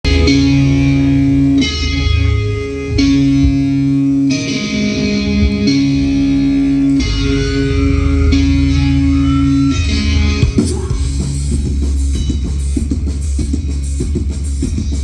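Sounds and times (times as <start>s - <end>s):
drum kit steady beat: 0.0s - 0.7s, 10.4s - 15.0s
guitar ringing chords: 0.0s - 12.5s.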